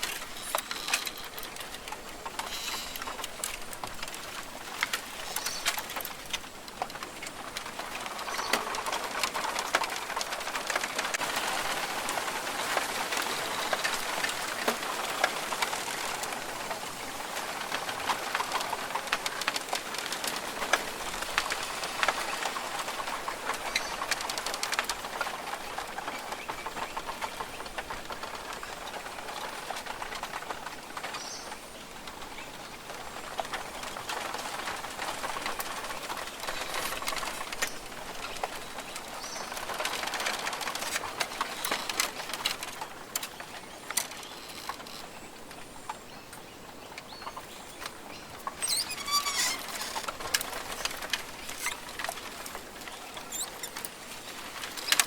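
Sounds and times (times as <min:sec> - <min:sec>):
dense rustling and crackling: 0:00.0 - 0:55.0
high squeaky calls: 0:48.5 - 0:50.1, 0:53.2 - 0:53.9.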